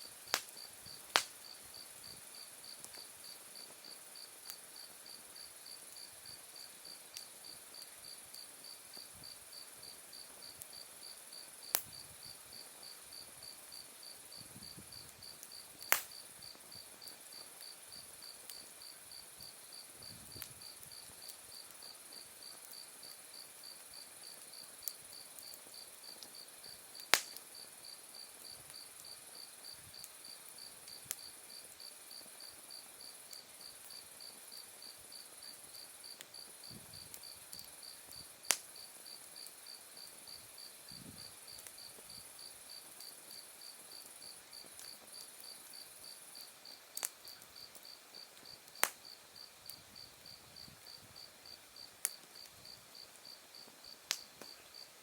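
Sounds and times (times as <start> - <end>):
campfire popping and crackling: 0.0 - 5.0, 11.6 - 12.9, 14.1 - 29.3, 36.1 - 40.2, 41.2 - 54.7
crickets chirping: 27.6 - 54.9.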